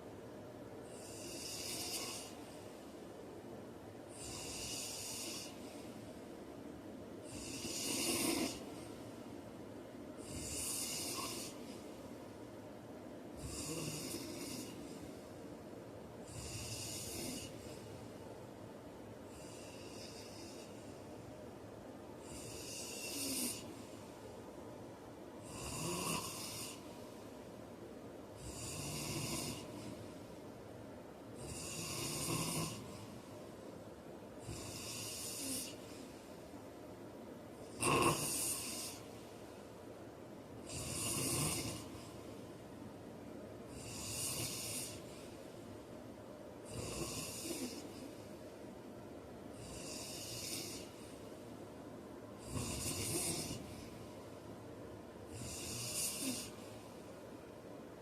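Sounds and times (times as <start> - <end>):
man snoring: 1.0 - 2.4, 4.2 - 5.6, 7.3 - 8.7, 10.2 - 11.7, 13.4 - 15.0, 16.3 - 17.8, 22.2 - 23.7, 25.4 - 26.8, 28.4 - 29.9, 31.4 - 33.1, 34.4 - 35.8, 37.6 - 39.0, 40.6 - 42.0, 43.7 - 45.1, 46.6 - 48.0, 49.6 - 51.0, 52.4 - 53.8, 55.3 - 56.6.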